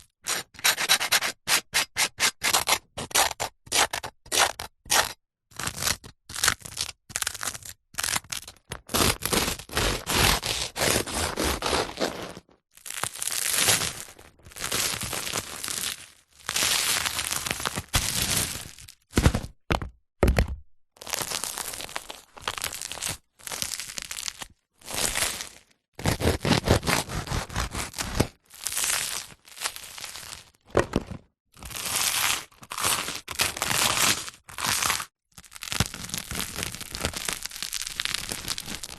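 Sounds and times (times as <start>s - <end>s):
crusty bread crackling: 9.3s - 16.0s, 32.2s - 38.9s.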